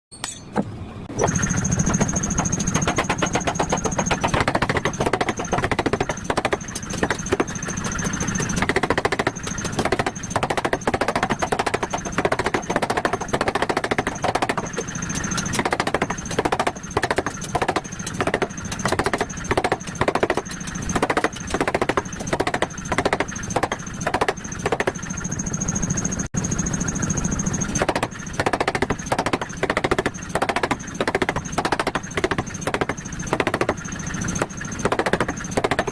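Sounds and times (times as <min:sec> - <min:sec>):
forging hammer striking steel: 0:00.1 - 0:00.6
low machine hum: 0:00.2 - 0:35.9
thin high whine: 0:00.3 - 0:04.2.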